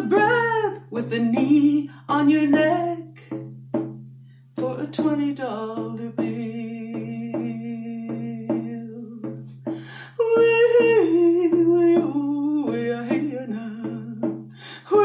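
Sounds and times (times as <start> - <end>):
slow drum beat: 0.0 - 15.0
woman humming a melody: 10.1 - 15.0.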